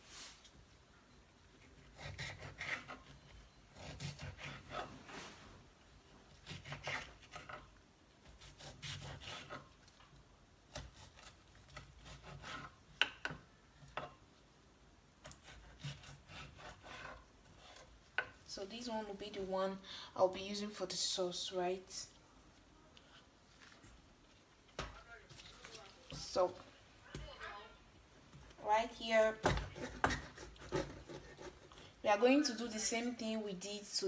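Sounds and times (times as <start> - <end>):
knife chopping on cutting board: 29.4 - 31.6.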